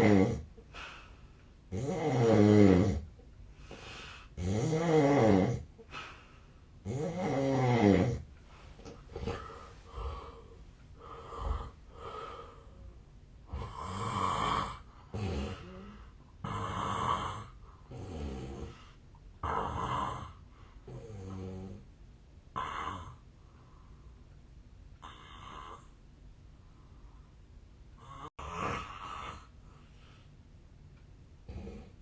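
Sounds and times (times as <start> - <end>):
man snoring: 0.0 - 0.5, 1.7 - 3.1, 4.4 - 5.7, 6.8 - 8.3, 13.5 - 18.8, 19.4 - 21.8, 22.6 - 23.2, 25.0 - 25.9, 28.0 - 29.5.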